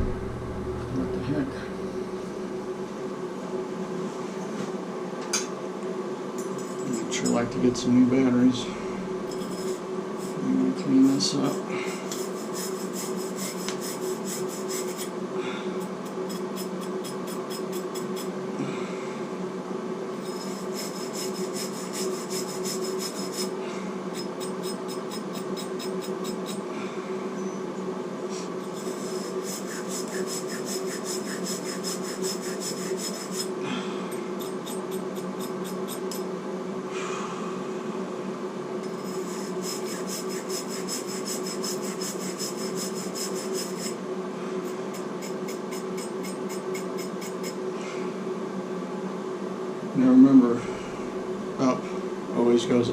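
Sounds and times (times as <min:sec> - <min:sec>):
steady low hum: 0:00.0 - 0:52.9
abrasive scrubbing metal pipe: 0:08.6 - 0:10.5, 0:11.1 - 0:15.2, 0:20.2 - 0:26.7, 0:28.6 - 0:36.2, 0:38.8 - 0:44.0, 0:44.6 - 0:47.6.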